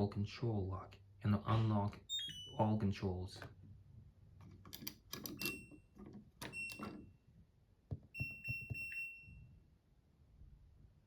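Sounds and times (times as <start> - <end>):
washing machine beeping: 2.1 - 2.7, 5.4 - 7.2, 8.2 - 9.6.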